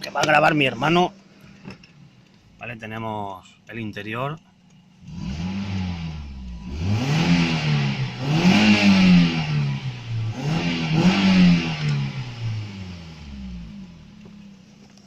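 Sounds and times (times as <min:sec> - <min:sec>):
car engine revving: 0:04.9 - 0:14.9.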